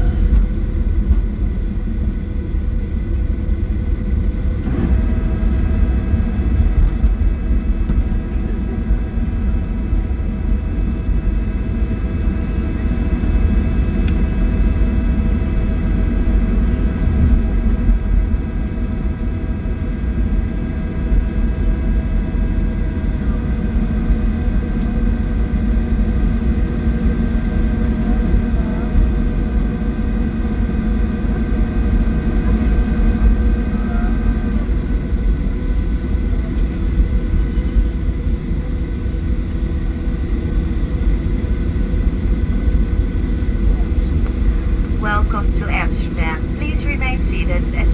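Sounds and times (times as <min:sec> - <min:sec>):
jet engines whining at idle: 0:00.0 - 0:47.9
airplane cabin rumble: 0:43.4 - 0:47.9.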